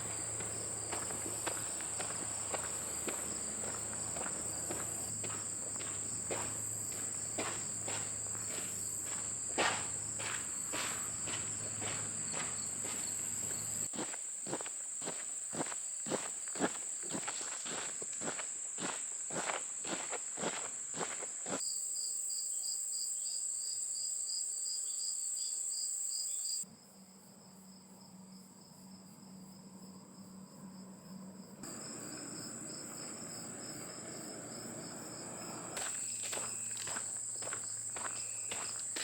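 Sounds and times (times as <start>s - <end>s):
pulsing insect trill: 0.0s - 14.0s, 28.6s - 39.0s
walking footsteps: 0.0s - 21.6s, 31.6s - 39.0s
crickets and insects chirping: 0.0s - 39.0s.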